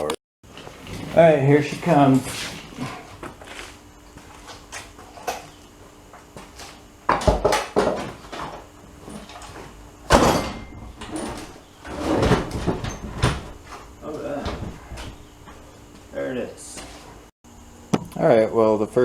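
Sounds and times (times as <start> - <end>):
engine scraping on bench: 0.5 - 3.8, 10.9 - 17.3.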